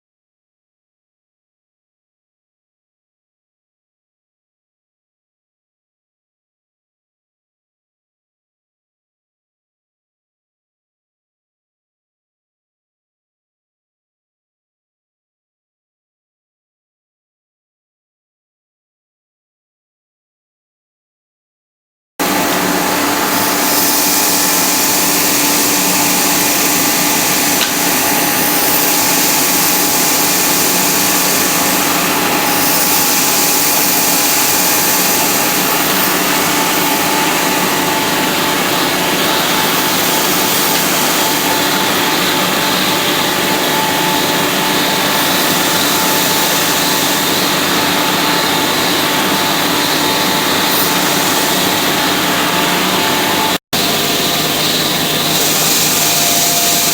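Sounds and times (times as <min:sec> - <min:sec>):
vacuum air rushing through hose: 0:22.2 - 0:56.9
vacuum machine hum: 0:22.2 - 0:56.9.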